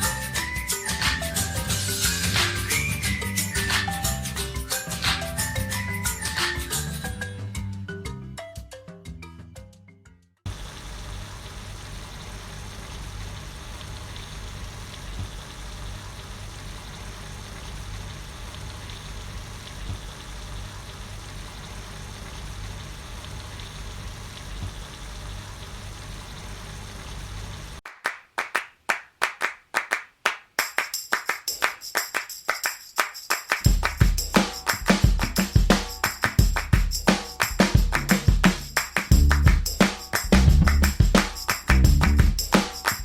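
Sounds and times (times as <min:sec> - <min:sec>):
rhythmic music with tambourine: 0:00.0 - 0:09.8, 0:30.5 - 0:43.0
steady hiss: 0:30.6 - 0:43.0.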